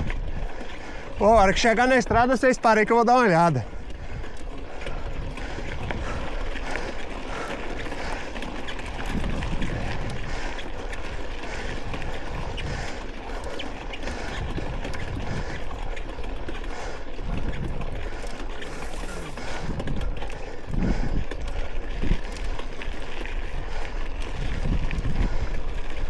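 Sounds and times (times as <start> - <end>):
wind on microphone: 0.0 - 2.3, 3.6 - 13.4, 14.0 - 26.0
bike rattling over bumps: 0.0 - 26.0
bike tyres on dirt: 0.0 - 26.0.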